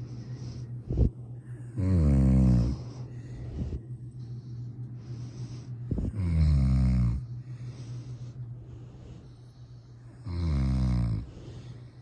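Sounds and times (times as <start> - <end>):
soft breathing: 0.0 - 12.0
loud drawn-out snore: 1.8 - 2.8, 6.0 - 7.3, 10.2 - 11.3.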